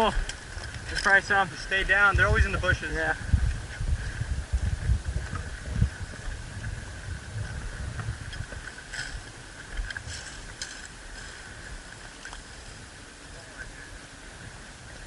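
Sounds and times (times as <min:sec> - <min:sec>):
low wind rumble: 0:00.0 - 0:15.0
microphone handling noise: 0:01.8 - 0:13.0.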